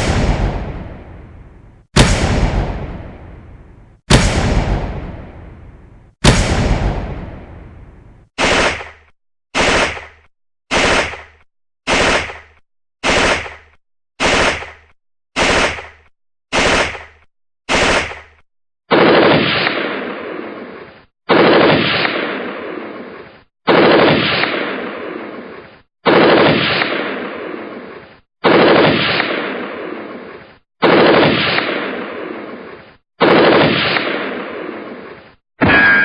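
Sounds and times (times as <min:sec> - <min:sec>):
gunshot: 0:00.0 - 0:20.5, 0:21.3 - 0:22.9, 0:23.7 - 0:25.4, 0:26.0 - 0:27.7, 0:28.4 - 0:30.0, 0:30.8 - 0:32.5, 0:33.2 - 0:35.0
machine-gun fire bursts: 0:08.4 - 0:09.0, 0:09.6 - 0:20.2, 0:21.3 - 0:22.6, 0:23.7 - 0:25.0, 0:26.0 - 0:27.4, 0:28.4 - 0:29.8, 0:30.8 - 0:32.4, 0:33.2 - 0:34.7.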